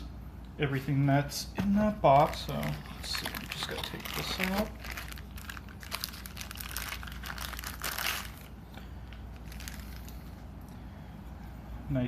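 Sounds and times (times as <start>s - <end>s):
packaging crinkling and rustling: 2.1s - 10.4s.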